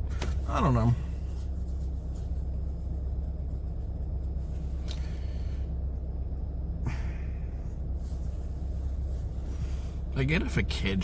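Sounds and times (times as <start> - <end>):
car idling: 0.0 - 11.0
faint rustles: 0.1 - 6.0, 7.4 - 10.2.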